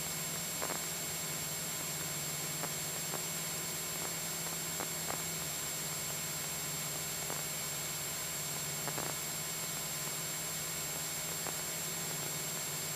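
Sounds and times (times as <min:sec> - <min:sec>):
cockpit hiss: 0:00.0 - 0:12.9
faint ticks: 0:08.8 - 0:09.2.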